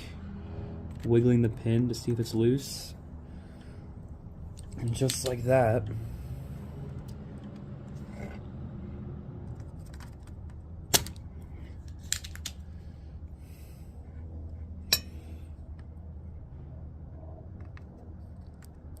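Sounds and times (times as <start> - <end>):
low steady hum: 0.0 - 19.0
tool clicks and metallic clinks: 4.6 - 5.4.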